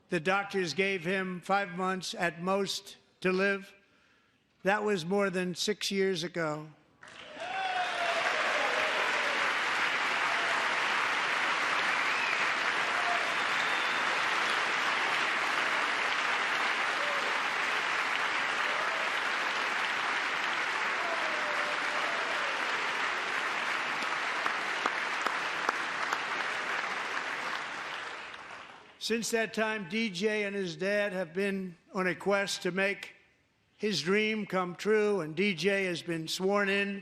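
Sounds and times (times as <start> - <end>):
large crowd applauding: 7.0 - 29.0.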